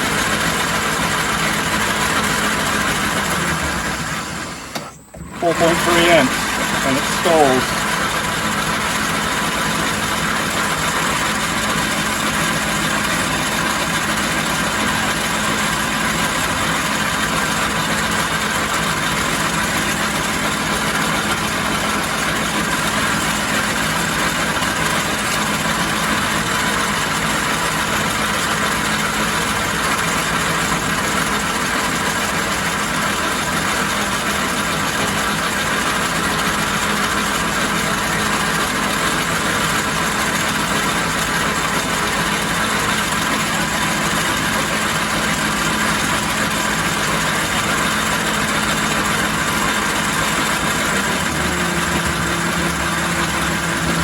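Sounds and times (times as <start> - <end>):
metal lathe humming: 0.0 - 54.0
whining tones: 50.8 - 54.0.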